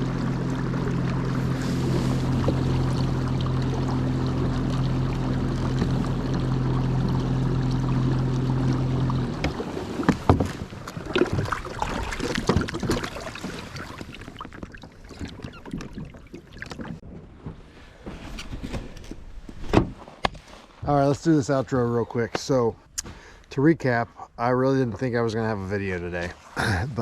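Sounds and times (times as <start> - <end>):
motor humming: 18.1 - 19.9.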